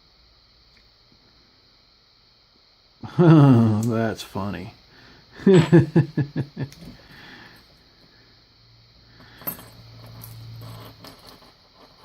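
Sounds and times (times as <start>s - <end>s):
low steady hum: 0.0s - 12.0s
small metal parts clinking: 9.2s - 12.0s.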